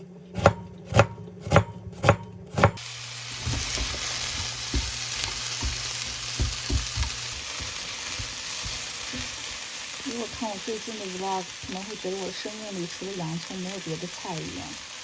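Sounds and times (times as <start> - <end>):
knife chopping on cutting board: 0.4 - 2.8, 3.4 - 9.4
food sizzling in frying pan: 2.8 - 15.0.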